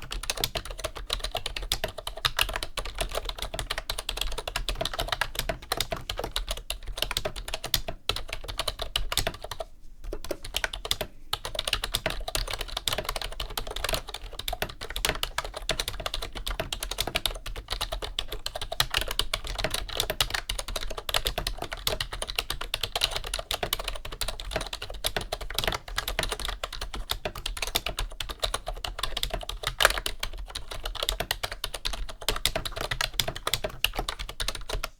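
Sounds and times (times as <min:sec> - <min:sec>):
keyboard typing: 0:00.0 - 0:34.9.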